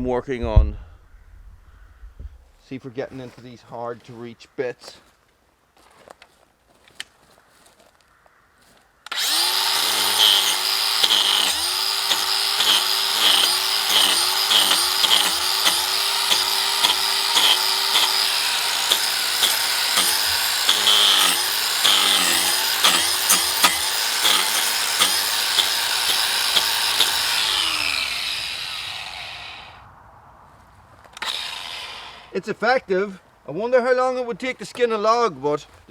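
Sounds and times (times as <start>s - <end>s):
angle grinder cutting wood: 9.1s - 29.8s, 31.2s - 32.4s.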